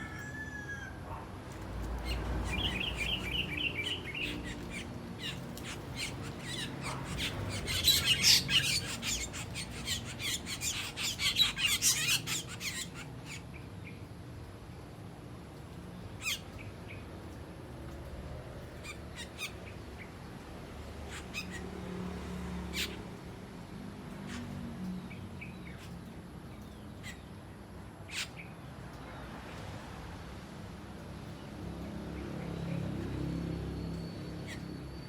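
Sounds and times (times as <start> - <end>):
starlings calling sharply: 2.1 - 13.4.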